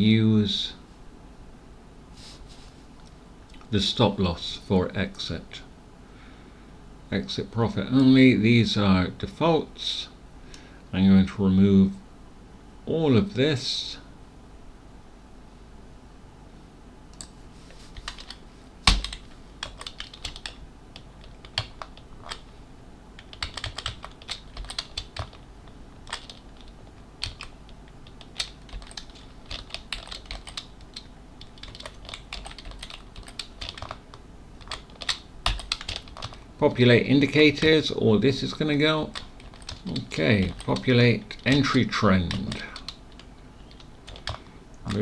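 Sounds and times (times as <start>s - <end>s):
computer keyboard typing: 18.0s - 22.5s, 23.2s - 36.4s, 38.4s - 45.0s.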